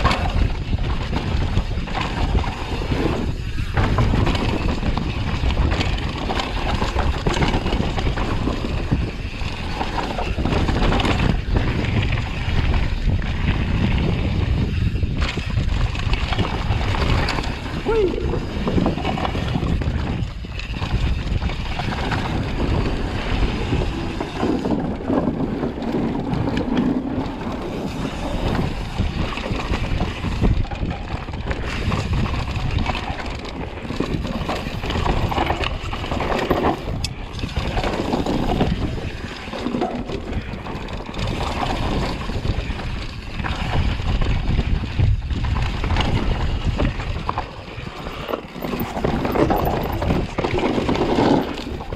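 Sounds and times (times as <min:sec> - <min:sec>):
mountain bike rattling over dirt: 0:00.0 - 0:51.9
wind buffeting microphone: 0:00.0 - 0:51.9.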